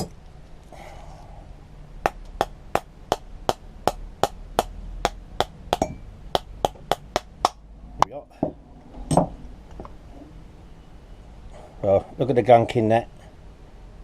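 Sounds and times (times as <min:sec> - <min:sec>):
sharp taps on metal: 0:02.1 - 0:09.3.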